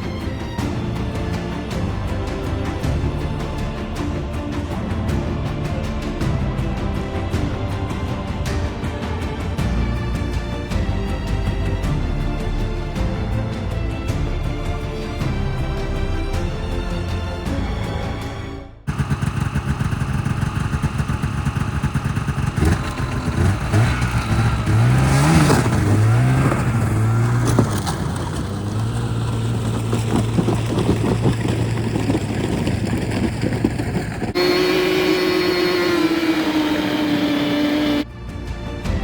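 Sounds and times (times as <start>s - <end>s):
snowmobile engine revving: 18.9s - 38.1s.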